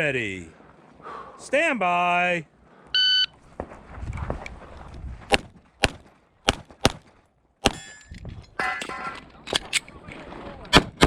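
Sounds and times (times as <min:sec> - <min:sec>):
pistol shots: 0:05.3 - 0:07.9
metallic ringing: 0:07.7 - 0:09.2.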